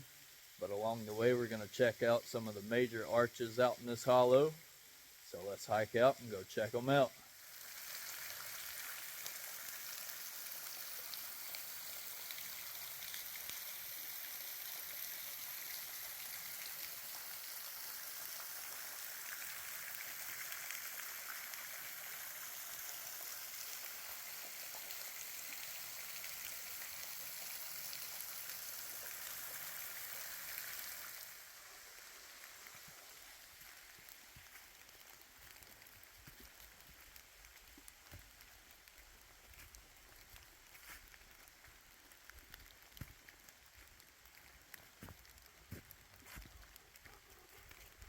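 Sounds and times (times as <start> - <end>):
rain falling in forest: 0.0 - 48.0.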